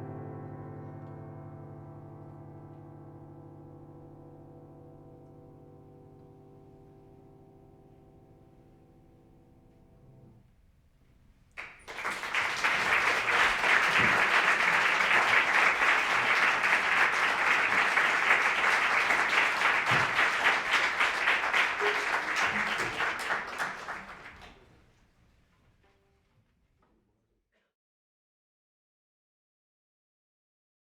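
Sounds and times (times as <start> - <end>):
audience applause: 11.6 - 24.7.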